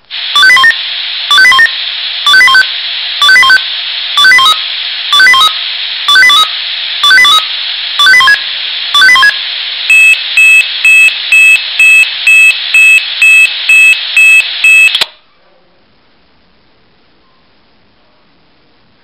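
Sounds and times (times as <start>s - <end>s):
steady hiss: 0.0s - 15.2s.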